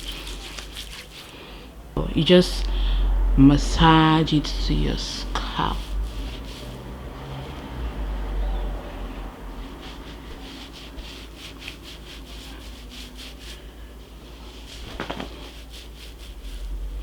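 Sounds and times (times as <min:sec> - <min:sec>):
fingertips rubbing scalp: 0:00.0 - 0:01.4, 0:04.7 - 0:07.0, 0:09.6 - 0:13.6.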